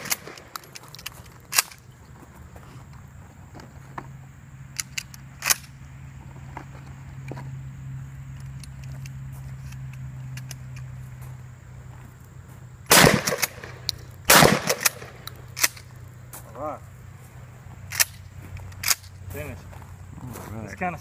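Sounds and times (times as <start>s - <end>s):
shotgun shots with echo: 0.0s - 0.5s, 12.9s - 15.2s
sharp clicks: 0.0s - 1.9s, 4.8s - 5.8s, 8.3s - 10.9s, 12.9s - 16.1s, 17.9s - 19.2s.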